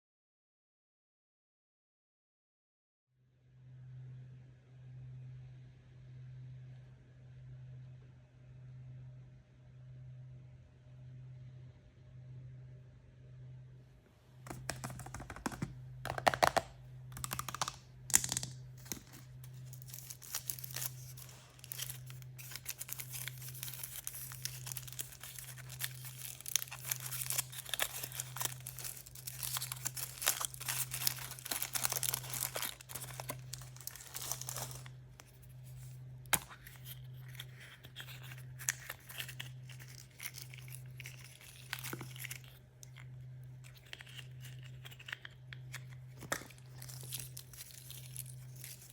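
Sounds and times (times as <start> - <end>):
plastic packaging crinkling: 14.5 - 48.9.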